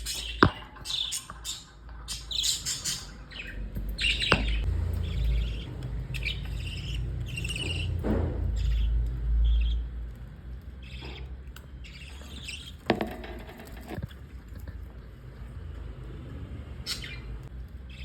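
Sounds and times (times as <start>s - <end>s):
budgerigars chirping and chattering: 0.0s - 10.0s, 10.6s - 14.0s, 16.8s - 18.0s.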